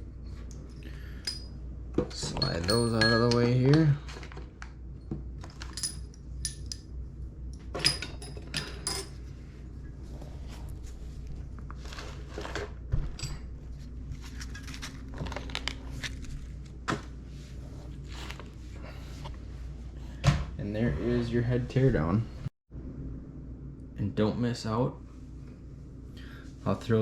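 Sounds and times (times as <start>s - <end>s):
metal valve parts clinking: 0.7s - 1.6s, 2.3s - 3.8s, 5.6s - 6.9s, 7.8s - 9.2s
bright metallic rings: 2.4s - 3.6s.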